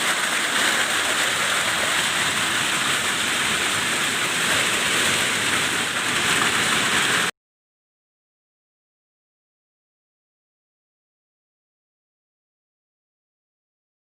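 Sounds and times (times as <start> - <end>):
hail and rain pelting down: 0.0 - 7.3.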